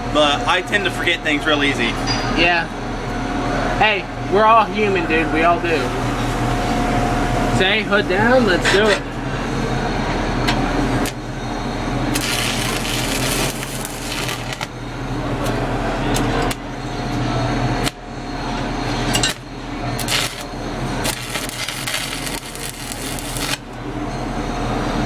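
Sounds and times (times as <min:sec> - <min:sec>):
low machine hum: 0:00.0 - 0:25.0
welding arc crackling: 0:10.8 - 0:16.7, 0:17.8 - 0:18.0, 0:19.0 - 0:24.2.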